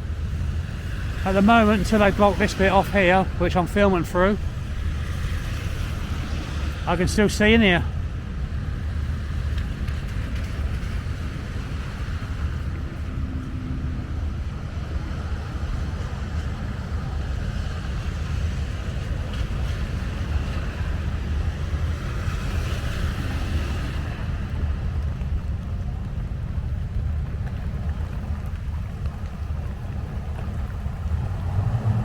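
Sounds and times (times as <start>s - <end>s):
wind buffeting microphone: 0.0s - 32.0s
heavy rain hissing: 0.7s - 8.0s.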